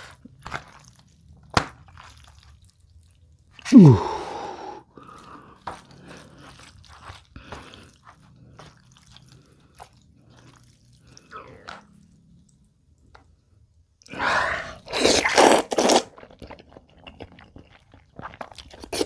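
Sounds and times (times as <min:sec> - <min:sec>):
wet sticky squishing: 0:00.0 - 0:03.7, 0:04.9 - 0:13.3.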